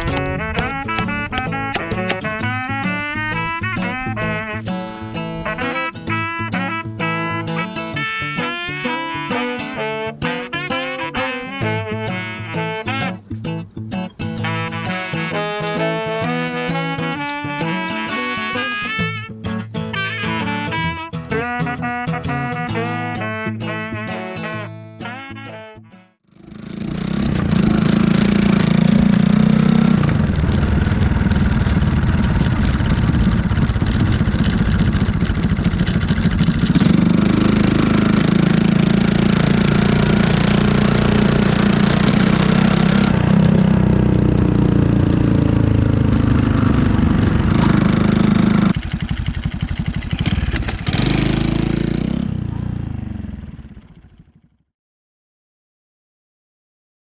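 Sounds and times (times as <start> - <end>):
moped engine revving: 0.0 - 4.4, 26.4 - 54.4.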